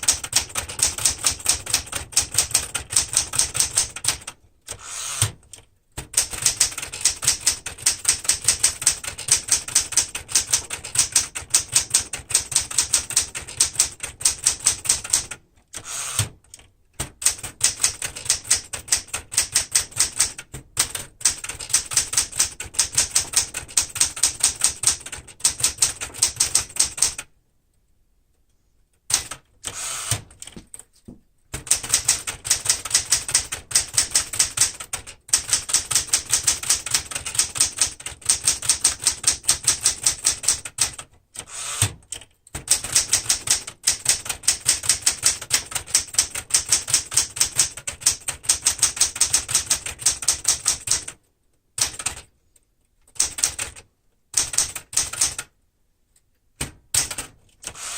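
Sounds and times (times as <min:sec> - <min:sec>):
manual typewriter typing: 0:00.0 - 0:27.3, 0:29.1 - 0:30.9, 0:31.5 - 0:51.2, 0:51.8 - 0:52.3, 0:53.0 - 0:55.5, 0:56.6 - 0:57.9.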